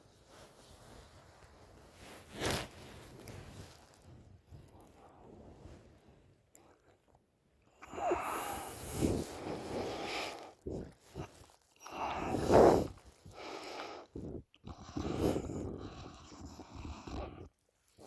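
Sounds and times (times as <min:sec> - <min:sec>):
woman snoring: 0:07.8 - 0:13.9.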